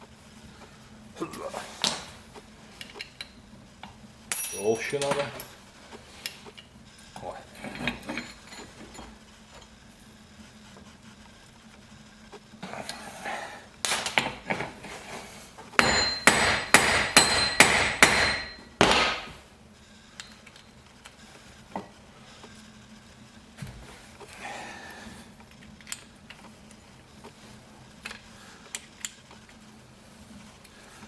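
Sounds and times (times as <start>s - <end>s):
hammer striking metal: 15.8s - 19.4s.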